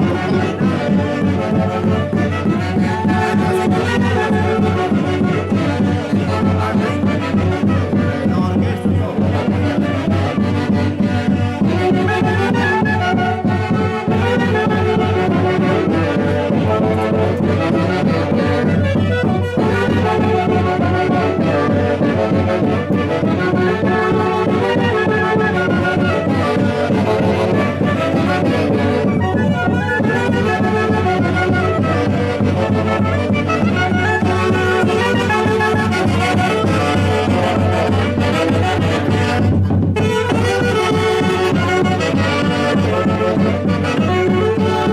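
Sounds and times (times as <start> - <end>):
festive band music: 0.0 - 44.9.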